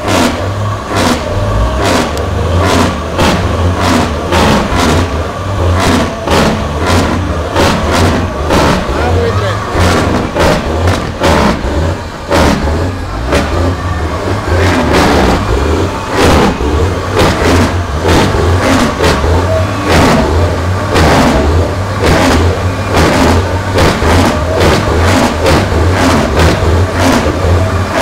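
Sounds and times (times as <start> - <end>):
car engine revving: 0.0 - 28.0
heavy exhaust rumble: 0.0 - 28.0.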